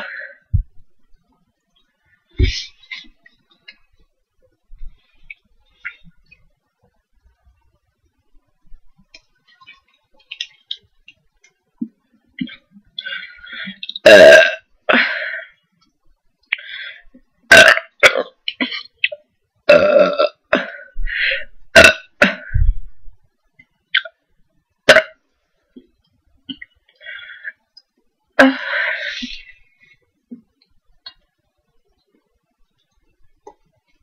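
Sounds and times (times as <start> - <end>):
loud burps: 13.8 - 15.2, 17.5 - 21.0, 21.7 - 22.7, 24.9 - 25.2.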